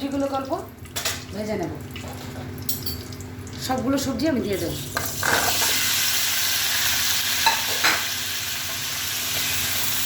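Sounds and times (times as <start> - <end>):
vegetables sizzling in hot oil: 4.5 - 10.0.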